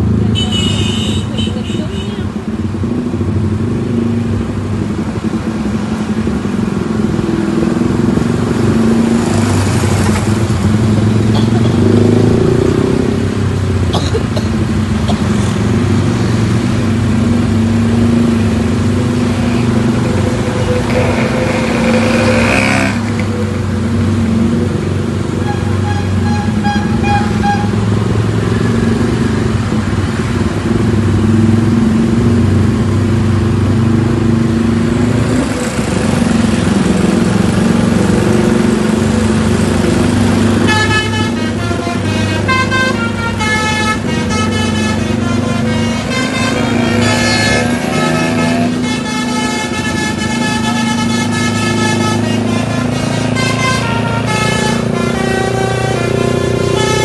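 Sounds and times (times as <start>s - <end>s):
diesel bus engines running: 0.0s - 57.0s
bus horn playing melody: 20.4s - 23.0s, 25.3s - 27.9s, 40.5s - 57.0s.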